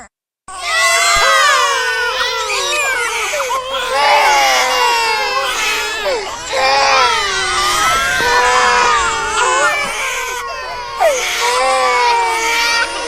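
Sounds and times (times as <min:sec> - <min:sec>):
infants crying: 0:00.5 - 0:13.0.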